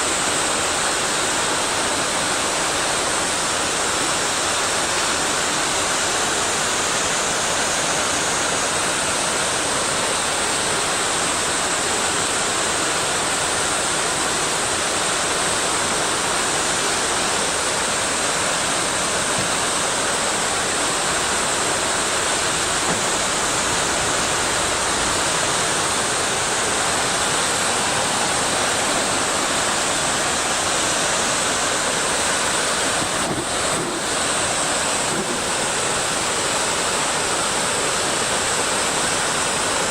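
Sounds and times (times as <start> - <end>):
river water rushing: 0.0 - 39.9.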